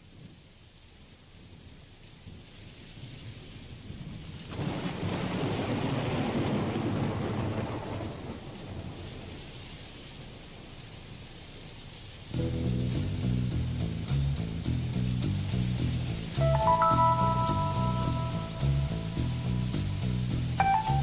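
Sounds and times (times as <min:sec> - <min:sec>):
steady rain: 0:00.0 - 0:21.0
thunder rolling: 0:04.4 - 0:09.4, 0:12.4 - 0:14.1.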